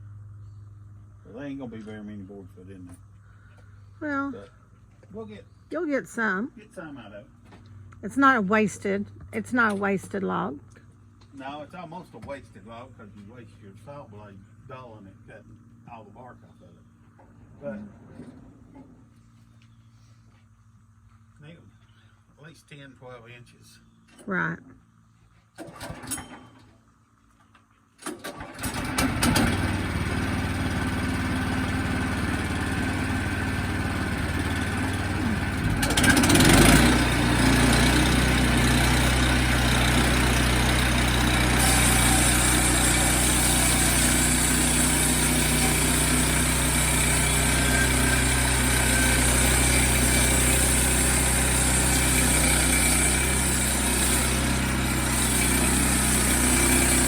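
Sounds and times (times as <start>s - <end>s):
sawmill engine running: 1.3s - 10.6s, 28.0s - 57.0s.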